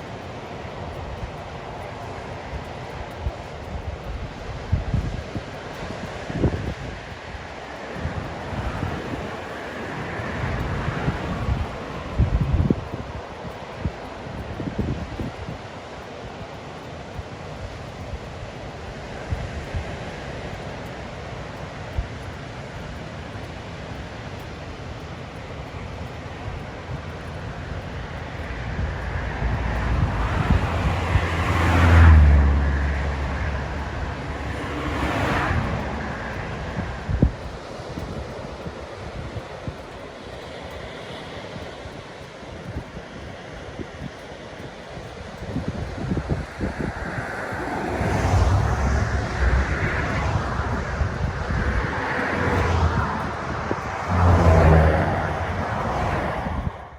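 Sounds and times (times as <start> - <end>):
road and wind noise: 0.0 - 56.9
vehicle passing: 27.3 - 38.2, 45.8 - 56.9.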